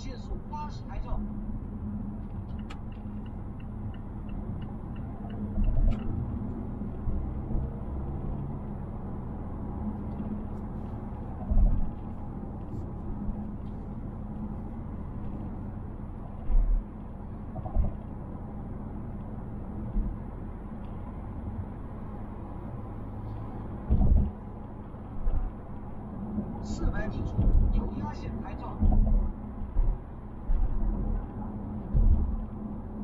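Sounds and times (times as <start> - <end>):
road and tyre rumble: 0.0 - 33.0
heavy thumps over road bumps: 23.8 - 24.5, 27.3 - 27.8, 28.7 - 32.5.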